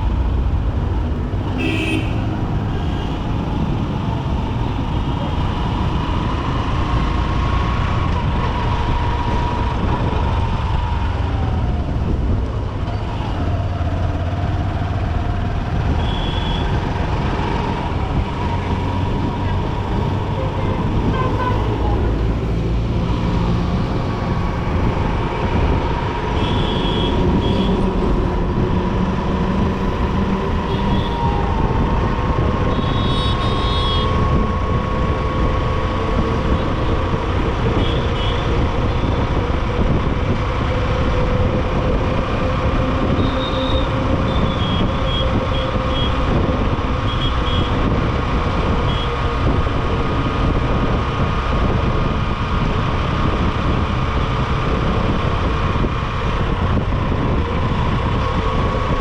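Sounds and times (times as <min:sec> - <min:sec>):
road and wind noise: 0:00.0 - 0:59.0.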